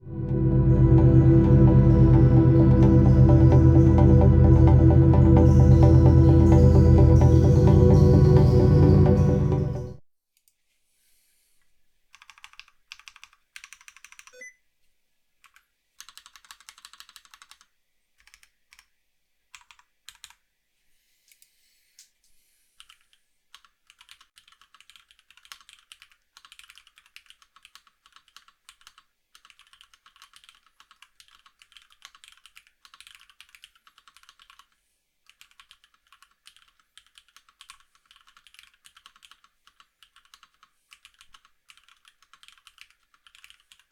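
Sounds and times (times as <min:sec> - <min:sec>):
soft mechanical keyboard typing: 0:12.1 - 0:14.5, 0:15.4 - 0:20.4, 0:22.8 - 0:43.9.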